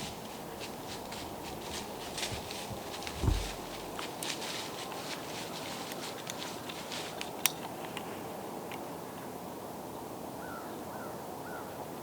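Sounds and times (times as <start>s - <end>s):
rustling in dry leaves: 0.0s - 8.5s
steady outdoor hiss: 0.0s - 12.0s.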